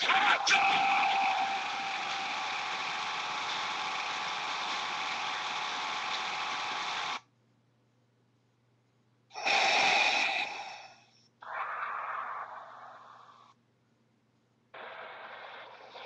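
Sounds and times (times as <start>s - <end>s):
steady noisy ringtone: 1.6s - 7.2s.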